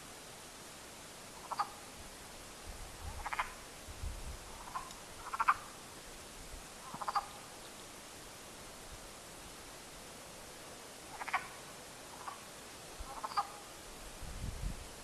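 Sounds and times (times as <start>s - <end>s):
wild animal rattling croak calls: 1.4s - 1.9s, 3.0s - 3.6s, 4.5s - 5.8s, 6.8s - 7.5s, 11.1s - 13.8s.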